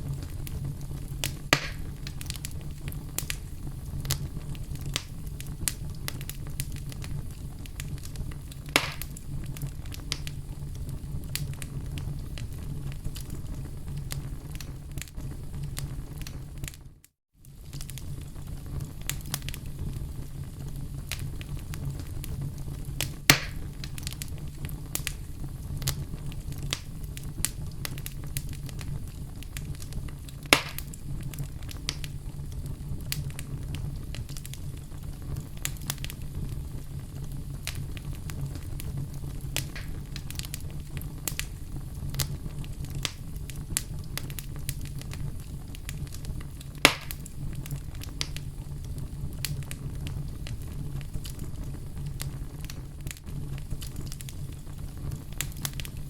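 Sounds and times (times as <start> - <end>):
campfire flames rumbling: 0.0 - 56.0
fire crackling: 0.0 - 56.0
sharp pops of burning wood: 0.2 - 10.4, 23.0 - 32.2, 37.6 - 48.6, 49.3 - 56.0.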